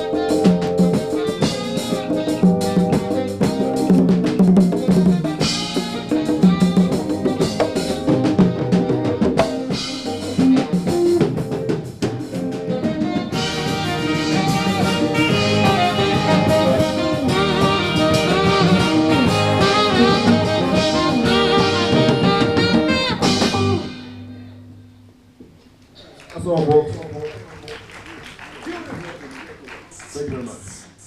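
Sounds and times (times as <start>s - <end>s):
brass horns: 0.0s - 11.7s, 12.3s - 24.2s
drum kit and hand drums: 0.0s - 24.5s
jazz band playing: 0.0s - 25.3s.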